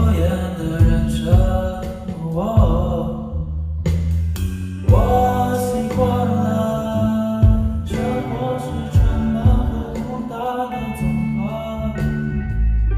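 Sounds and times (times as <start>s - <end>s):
steady bass line: 0.0s - 12.9s
drum hits: 0.8s - 3.1s, 3.9s - 6.2s, 8.9s - 10.2s.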